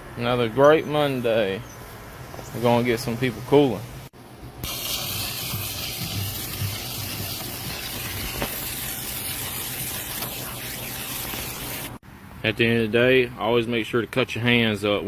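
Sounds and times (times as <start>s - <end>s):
water spraying onto metal coil: 4.6s - 12.0s.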